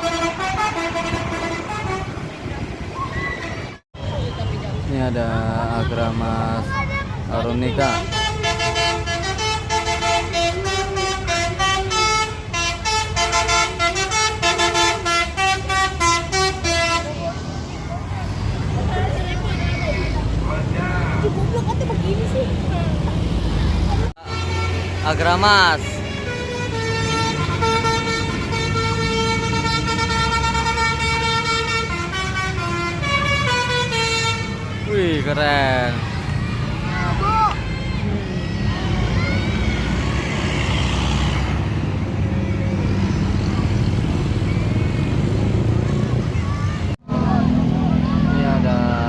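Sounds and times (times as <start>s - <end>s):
multi-tone bus horn melody: 0.0s - 2.5s, 7.7s - 17.3s, 24.2s - 35.4s, 37.5s - 38.3s
low rumble of bus: 0.0s - 49.0s
passing traffic: 0.0s - 49.0s.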